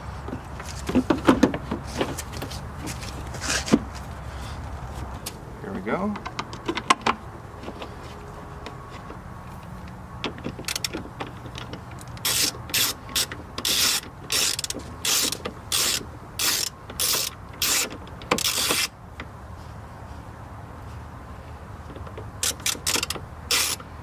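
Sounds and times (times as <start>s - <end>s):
ratchet rasping: 8.6s - 18.9s, 22.0s - 23.9s.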